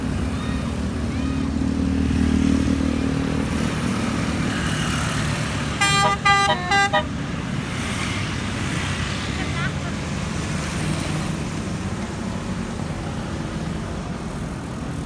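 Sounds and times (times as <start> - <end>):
vehicle engine running: 0.0 - 10.3
musical bus horn tune: 5.7 - 7.4.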